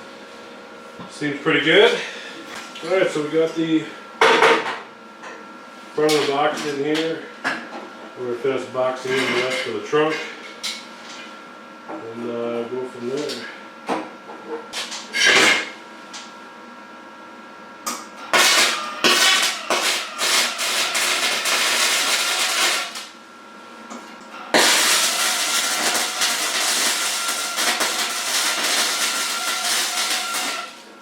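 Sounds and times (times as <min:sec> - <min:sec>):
welding buzz: 0:18.2 - 0:31.0.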